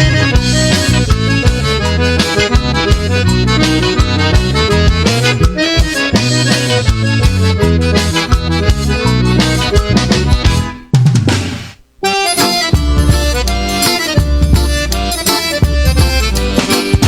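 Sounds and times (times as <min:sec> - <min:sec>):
accordion playing lead: 0:00.0 - 0:10.9, 0:11.6 - 0:17.0
bass: 0:00.0 - 0:17.0
steady drum hits: 0:09.5 - 0:11.8.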